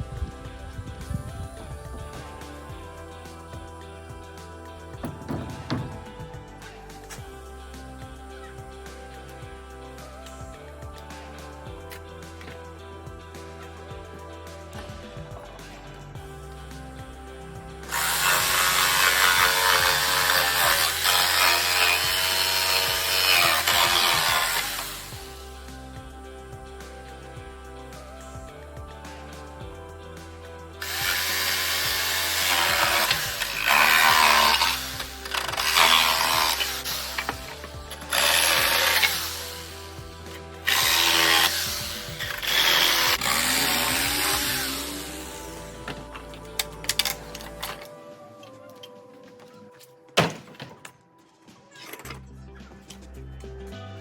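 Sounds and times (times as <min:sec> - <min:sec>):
background music: 0:00.0 - 0:54.0
power tool rasping on wood: 0:17.9 - 0:25.3, 0:30.8 - 0:46.0.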